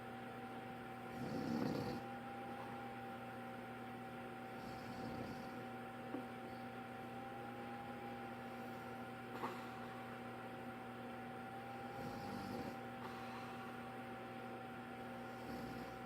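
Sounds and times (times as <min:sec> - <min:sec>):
electrical hum: 0:00.0 - 0:16.0
man snoring breath: 0:01.1 - 0:02.1, 0:04.5 - 0:05.6, 0:11.7 - 0:13.8, 0:15.1 - 0:16.0.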